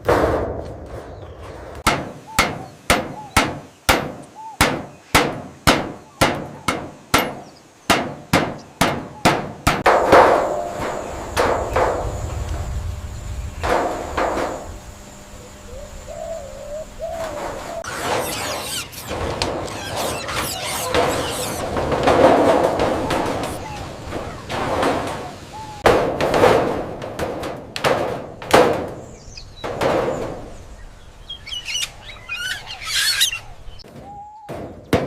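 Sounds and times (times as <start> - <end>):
hammer striking: 1.8 - 12.0.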